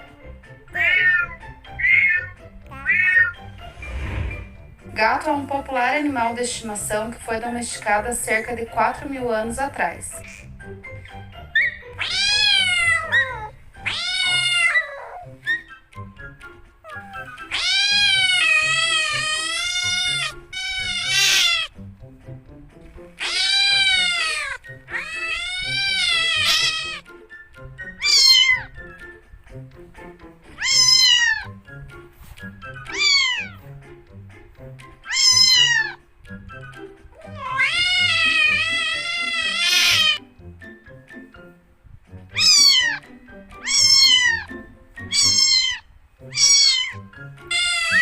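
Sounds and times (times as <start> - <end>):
cats meowing: 0.0 - 3.6, 11.5 - 15.6, 16.8 - 21.8, 23.2 - 27.1, 27.8 - 28.8, 30.5 - 31.6, 32.8 - 33.7, 35.0 - 36.0, 37.1 - 40.2, 42.3 - 48.0
soft background music: 0.0 - 48.0.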